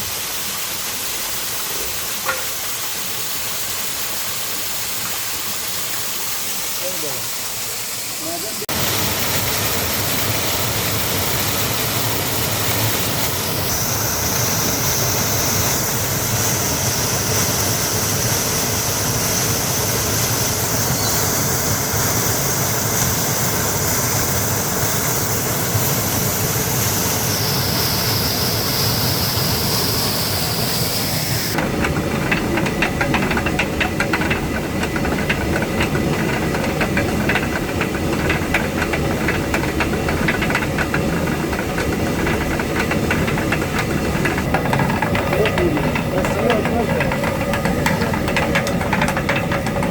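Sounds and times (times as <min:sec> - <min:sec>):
rushing water hiss: 0:00.0 - 0:31.8
mill workings clattering: 0:08.7 - 0:28.7, 0:31.5 - 0:49.9.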